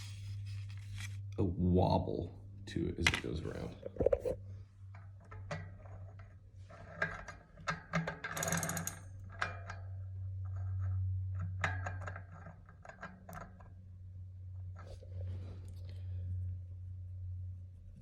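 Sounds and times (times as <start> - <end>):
steady low hum: 0.0 - 8.0, 8.8 - 18.0
bicycle hub clicking and rattling: 5.0 - 13.8.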